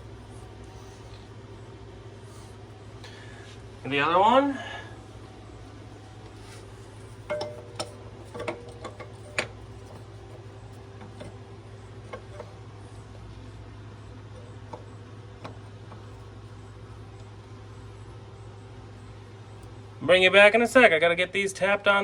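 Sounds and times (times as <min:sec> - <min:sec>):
steady low hum: 0:00.0 - 0:22.0
sharp metal clicks and knocks: 0:07.2 - 0:10.0.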